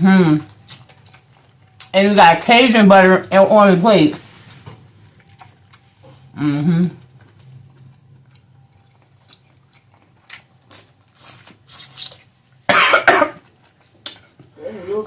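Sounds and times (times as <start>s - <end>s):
wet smacking and chewing: 0.5s - 2.0s, 5.1s - 6.3s, 7.0s - 12.6s, 13.4s - 14.5s
woman coughing loudly: 12.7s - 13.4s.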